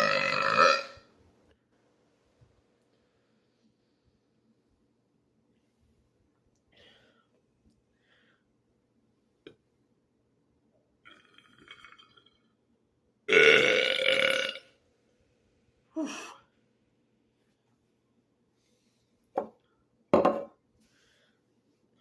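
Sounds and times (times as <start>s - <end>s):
man burping: 0.0s - 1.1s, 13.3s - 14.7s.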